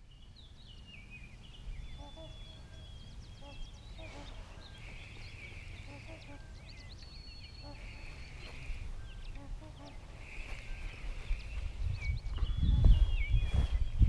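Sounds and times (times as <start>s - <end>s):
songbirds chirping: 0.0s - 14.0s
wind rumble on microphone: 0.0s - 14.0s
soft low swan calls: 1.8s - 11.7s
buzzy bird trill: 1.8s - 14.0s.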